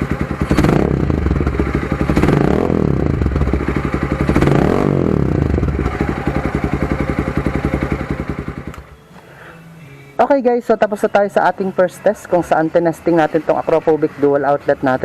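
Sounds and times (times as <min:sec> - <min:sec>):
motorcycle throttle revving: 0:00.0 - 0:09.0
motorcycle engine idling: 0:00.0 - 0:09.1.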